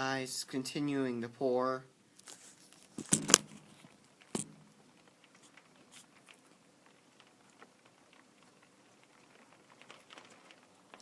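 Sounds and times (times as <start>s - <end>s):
rain ticking on window: 2.6s - 11.0s
sharp knock: 3.0s - 3.8s, 4.4s - 4.8s.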